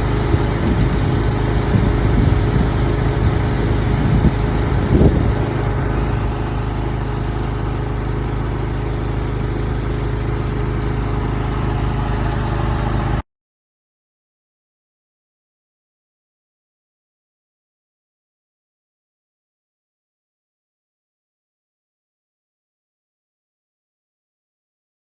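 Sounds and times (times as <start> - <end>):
motor-driven machine humming: 0.0 - 13.2.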